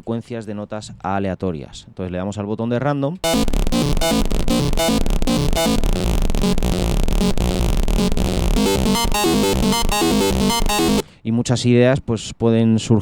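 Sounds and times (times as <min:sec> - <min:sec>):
distorted synth note sequence: 0:03.2 - 0:11.0.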